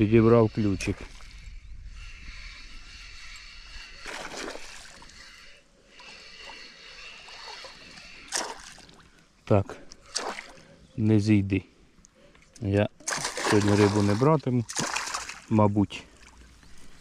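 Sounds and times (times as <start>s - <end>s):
water splashing and sloshing: 4.0s - 10.8s, 12.0s - 17.0s.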